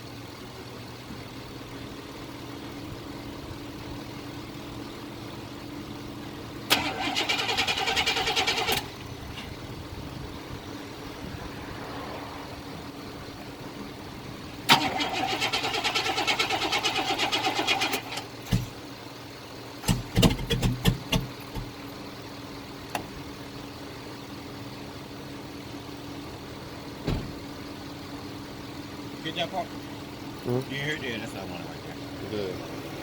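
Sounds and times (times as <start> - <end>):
engine cranking on starter: 6.6 - 9.6, 14.6 - 18.8, 19.8 - 21.7.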